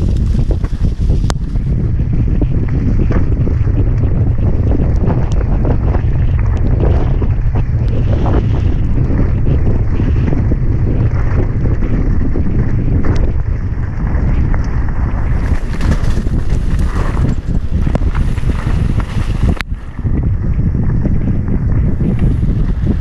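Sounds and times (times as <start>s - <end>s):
bike clattering over rough ground: 0.0s - 23.0s
wind rumble on microphone: 0.0s - 23.0s.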